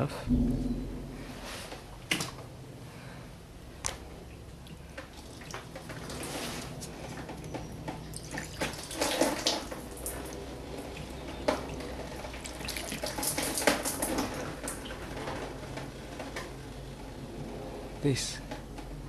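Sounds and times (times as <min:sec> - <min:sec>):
fluid dripping into container: 0:07.5 - 0:10.4
splashes and knocks: 0:07.9 - 0:10.3, 0:11.4 - 0:14.8.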